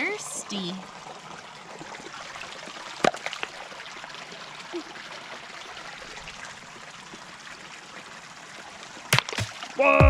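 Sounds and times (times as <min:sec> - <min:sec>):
river water flowing: 0:00.0 - 0:10.0
sharp knock: 0:09.2 - 0:09.6.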